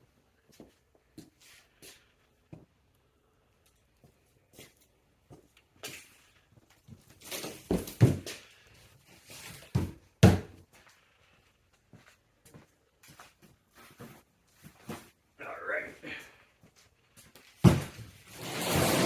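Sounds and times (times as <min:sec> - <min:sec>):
knocks and thuds: 0:17.6 - 0:18.1.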